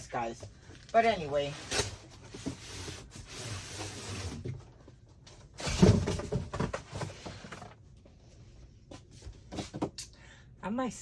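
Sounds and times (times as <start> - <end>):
cardboard rustling and scraping: 0.8 - 7.8
cardboard box thud: 5.6 - 7.4.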